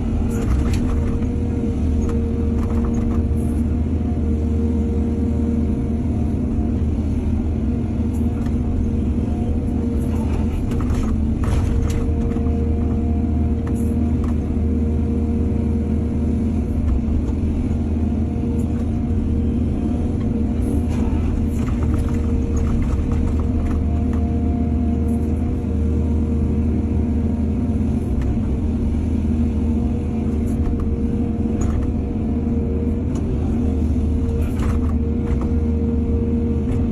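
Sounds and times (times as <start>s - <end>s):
excavator diesel engine running: 0.0s - 36.9s
excavator clattering: 0.2s - 3.4s, 10.0s - 13.0s, 20.2s - 24.2s.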